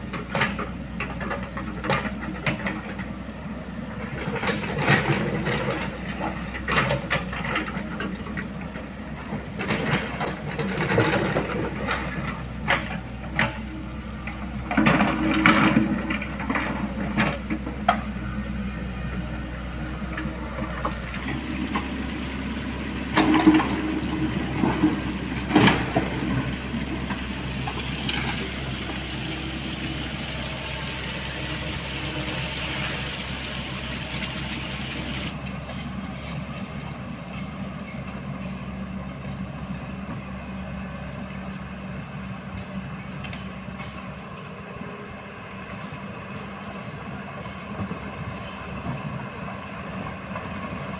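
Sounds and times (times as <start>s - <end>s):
diesel engine running: 0.0s - 50.9s
thin high squeal: 35.0s - 39.8s, 40.7s - 50.9s.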